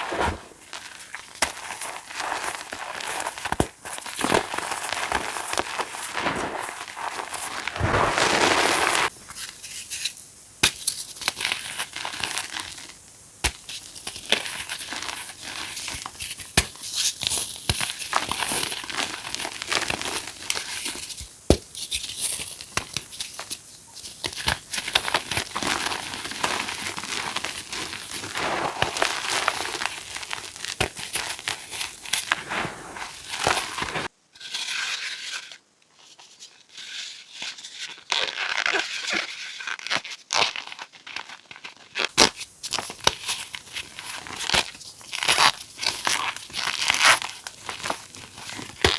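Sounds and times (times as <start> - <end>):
chalk crunching and cracking: 0.0 - 12.8, 13.4 - 34.1.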